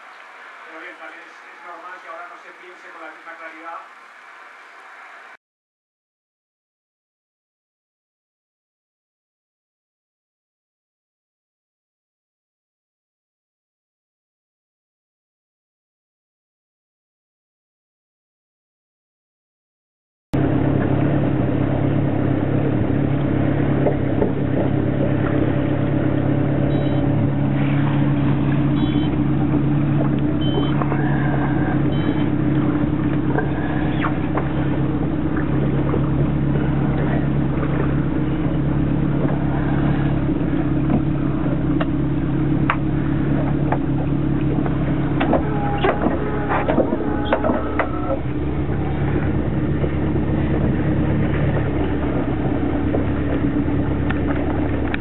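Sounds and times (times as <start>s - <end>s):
boat engine droning: 0.0s - 5.4s, 20.4s - 55.0s.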